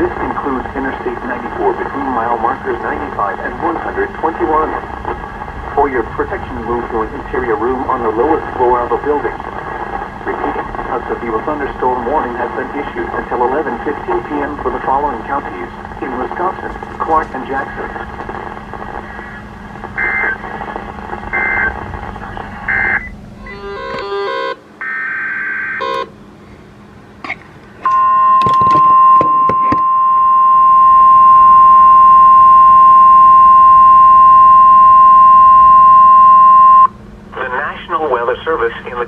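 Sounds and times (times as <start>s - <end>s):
steady warning alarm tone: 1.6s - 26.3s, 27.8s - 37.0s
data bursts: 10.2s - 26.0s
digital code tones: 20.0s - 20.4s, 21.3s - 21.8s, 22.7s - 26.0s.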